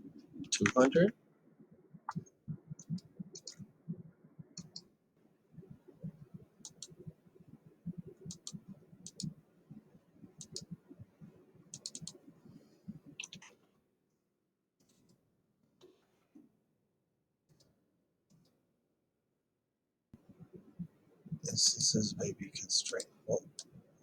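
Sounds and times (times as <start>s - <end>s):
computer mouse clicking: 2.8s - 3.6s, 4.6s - 4.9s, 6.6s - 7.0s, 8.3s - 9.3s, 10.4s - 10.7s, 11.8s - 12.2s, 13.2s - 13.5s.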